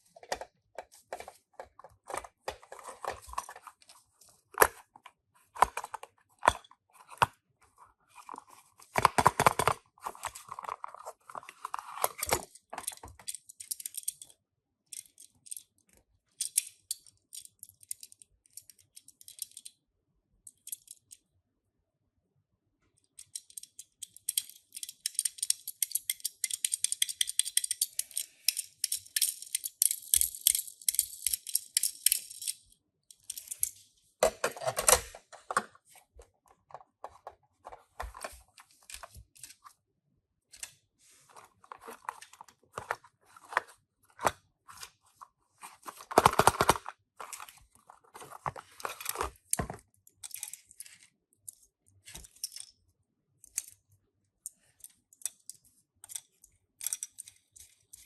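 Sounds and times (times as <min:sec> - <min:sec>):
clicks and taps of toy car: 0:23.0 - 0:33.7.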